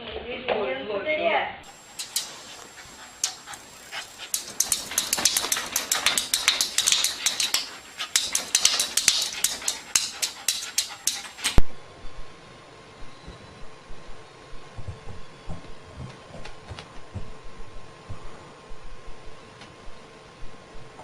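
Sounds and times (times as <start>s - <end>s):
rapid clicking and tapping: 1.7s - 11.6s.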